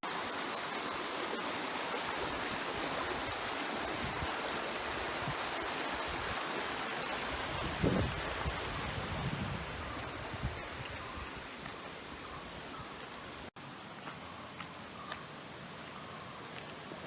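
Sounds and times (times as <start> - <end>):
running water rushing: 0.0 - 17.0.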